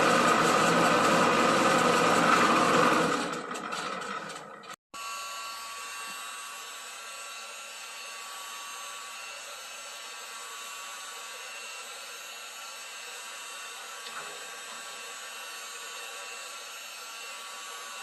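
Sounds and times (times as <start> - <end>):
electric motor and fan whirring: 0.0 - 18.0.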